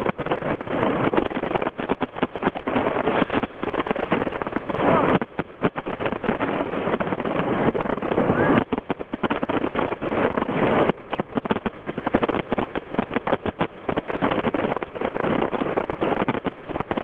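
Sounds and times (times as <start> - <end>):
fireworks bangs and crackling: 0.0 - 17.0.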